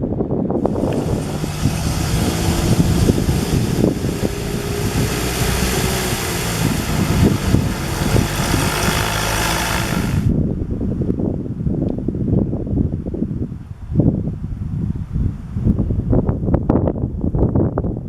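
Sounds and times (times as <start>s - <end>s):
wind buffeting microphone: 0.0s - 18.0s
aircraft engine hissing: 0.6s - 10.3s.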